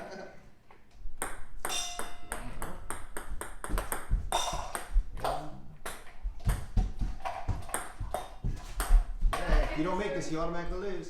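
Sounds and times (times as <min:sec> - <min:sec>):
ping-pong balls bouncing: 0:01.1 - 0:09.8.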